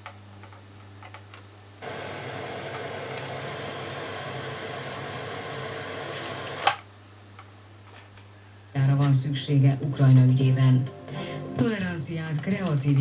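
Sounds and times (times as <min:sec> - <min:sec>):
radio static hiss: 0:01.8 - 0:06.8.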